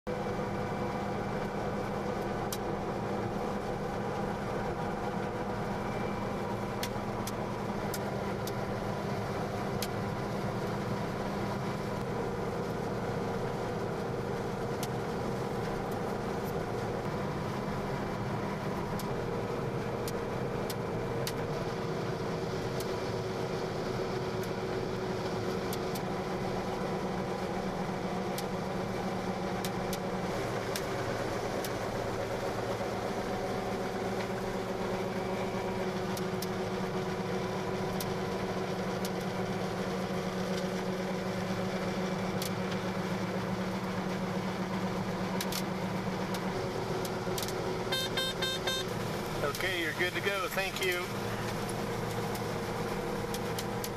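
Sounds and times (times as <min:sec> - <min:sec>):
combine harvester running: 0:00.1 - 0:53.9.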